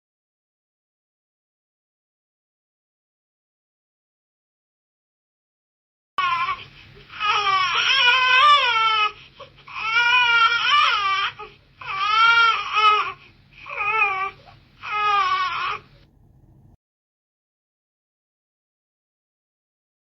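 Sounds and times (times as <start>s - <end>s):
infant crying: 6.2s - 16.1s.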